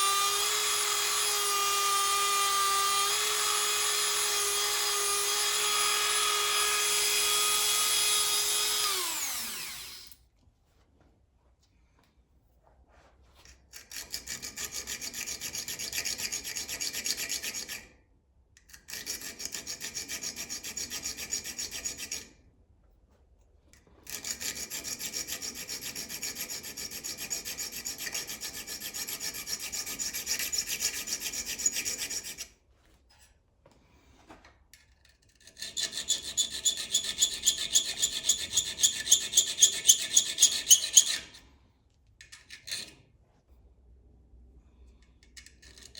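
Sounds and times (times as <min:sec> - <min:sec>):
hand file rasping on metal: 0:13.7 - 0:17.9, 0:18.7 - 0:22.3, 0:24.0 - 0:32.6, 0:35.3 - 0:41.5.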